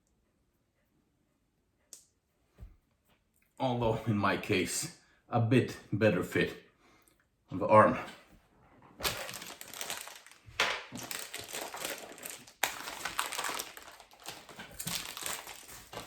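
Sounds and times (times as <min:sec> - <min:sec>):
packaging crinkling: 0:09.0 - 0:16.0.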